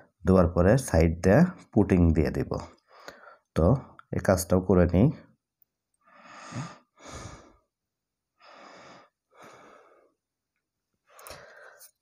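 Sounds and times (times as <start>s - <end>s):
quiet breathing: 2.6s - 3.5s, 6.0s - 7.7s, 8.4s - 10.2s, 11.0s - 12.0s.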